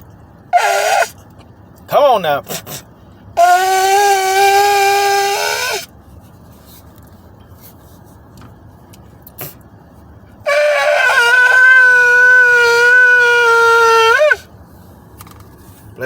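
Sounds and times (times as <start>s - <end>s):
shofar blasts: 0.6s - 1.1s, 10.5s - 14.4s.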